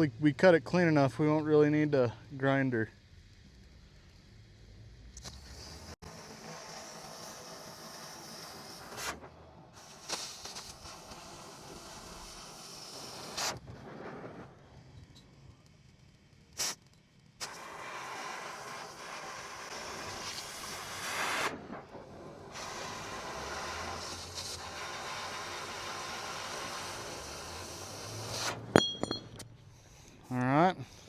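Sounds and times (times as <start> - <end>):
cutting torch hissing: 3.1 - 13.8, 16.3 - 28.7
sharp torch pops: 8.5 - 15.4, 16.4 - 28.8.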